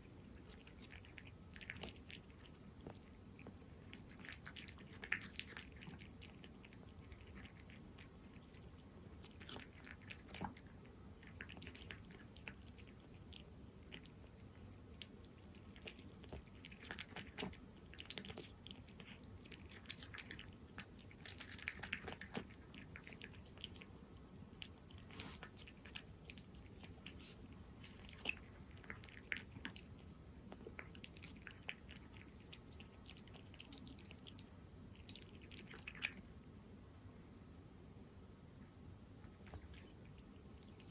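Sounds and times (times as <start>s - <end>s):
cat chewing and licking: 0.0s - 36.5s, 39.0s - 40.9s.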